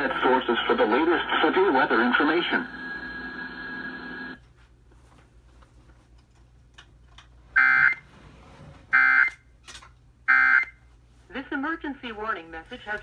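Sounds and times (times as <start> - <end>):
faint radio static: 0.0 - 4.4, 11.3 - 13.0.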